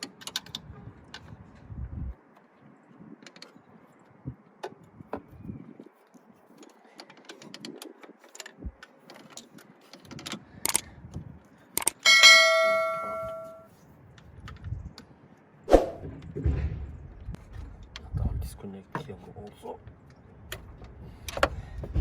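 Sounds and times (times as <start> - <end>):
hand tools clicking on metal: 6.6 - 10.9, 11.8 - 13.6
loud metallic clang: 12.1 - 13.6.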